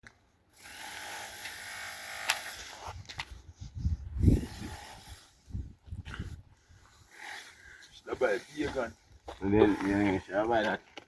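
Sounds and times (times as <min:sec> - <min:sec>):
small motor whirring: 0:00.5 - 0:02.9, 0:04.2 - 0:05.6.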